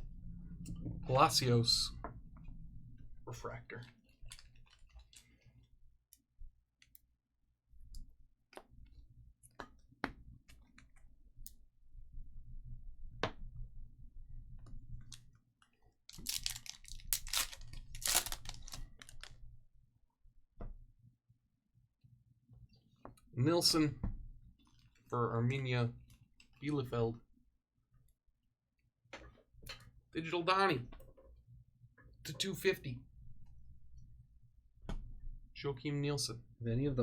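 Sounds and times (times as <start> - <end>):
cards rustling and sliding: 16.1 - 19.3.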